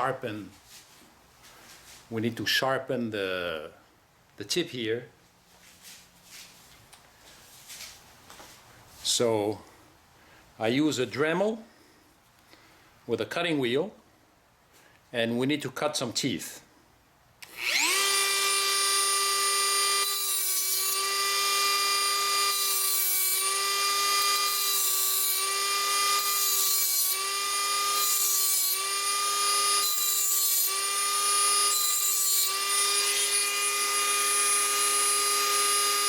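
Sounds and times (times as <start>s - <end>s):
cutting wheel grinding brass: 17.4s - 36.0s
rotary tool high whine: 17.4s - 36.0s.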